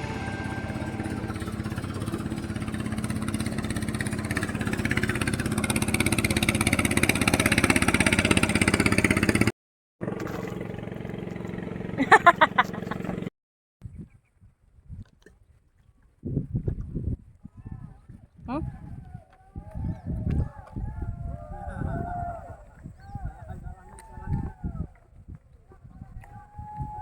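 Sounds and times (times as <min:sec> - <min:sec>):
short loud burst: 0:00.0 - 0:05.8
small boat engine running: 0:00.0 - 0:13.3.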